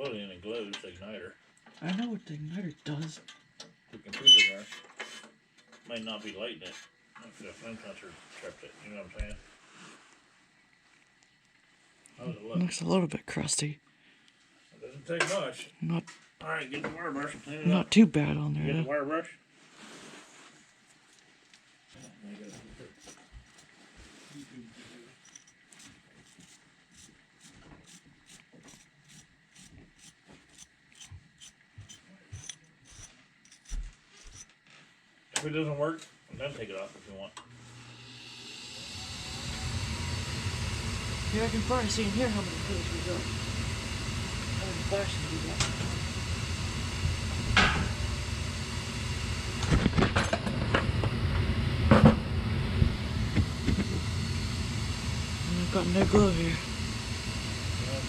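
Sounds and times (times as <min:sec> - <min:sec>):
wire brush scrubbing: 0:22.0 - 0:34.5.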